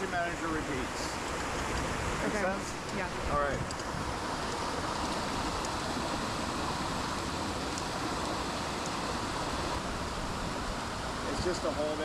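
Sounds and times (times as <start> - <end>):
waterfall and creek rushing: 0.0 - 12.0.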